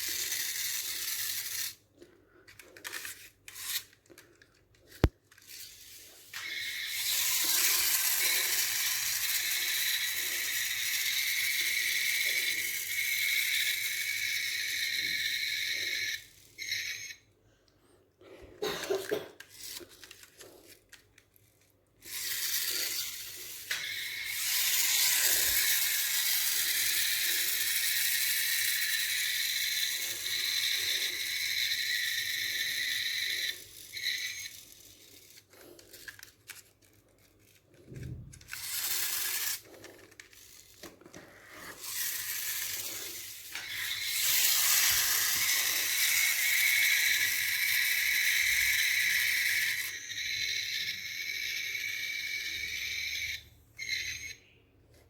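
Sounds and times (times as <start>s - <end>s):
toy cars box rustling and scraping: 19.0s - 27.8s, 32.6s - 47.4s.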